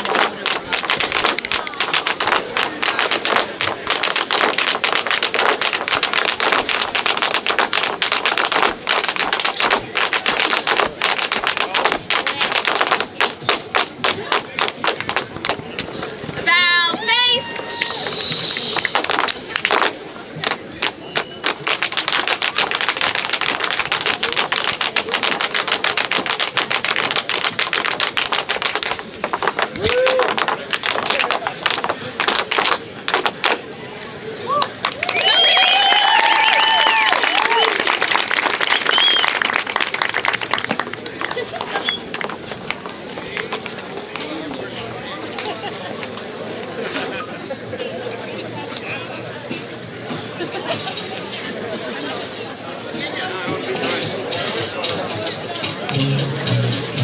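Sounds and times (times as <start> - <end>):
tap shoes clicking on floor: 0.0 - 16.1.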